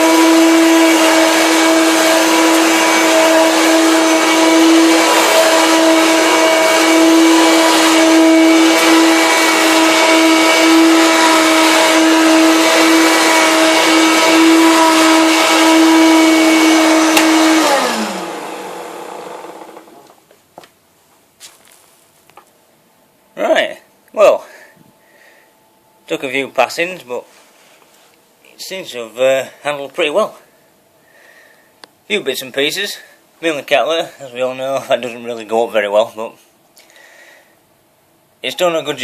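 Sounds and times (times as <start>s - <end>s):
vacuum cleaner motor whine: 0.0s - 20.2s.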